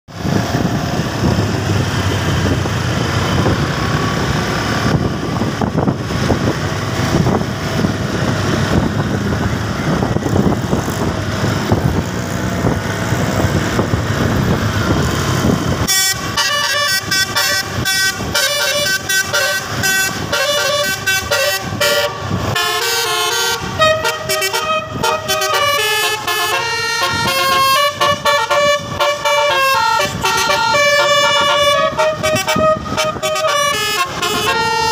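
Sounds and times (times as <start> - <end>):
vehicle rumbling: 0.0 - 34.9
multi-tone horn melody: 15.9 - 34.9.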